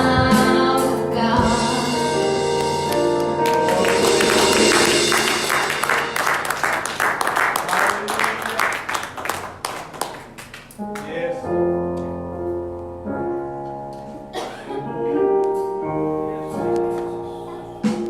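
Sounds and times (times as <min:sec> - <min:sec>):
keyboard playing slow chords: 0:00.0 - 0:07.0, 0:10.8 - 0:18.0.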